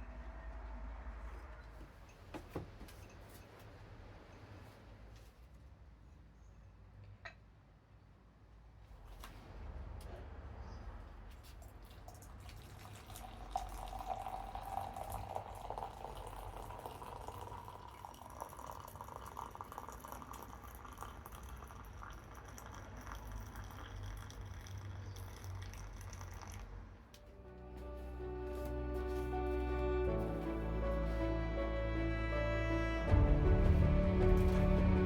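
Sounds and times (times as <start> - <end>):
running water: 12.0 - 26.6.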